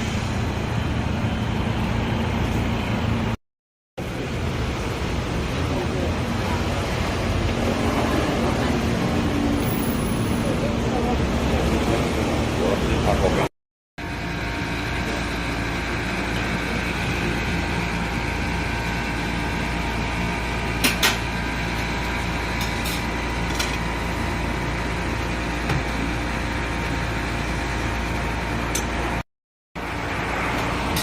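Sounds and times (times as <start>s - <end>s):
machinery hum: 0.0s - 3.4s.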